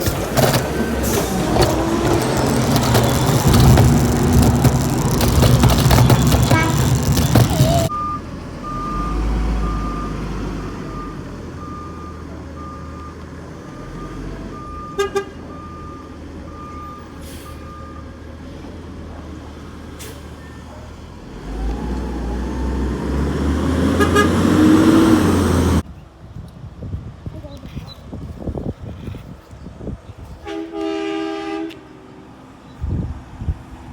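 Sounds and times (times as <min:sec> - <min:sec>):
garbage truck engine running: 0:00.0 - 0:08.0
horn toots: 0:00.1 - 0:07.9, 0:23.9 - 0:24.8.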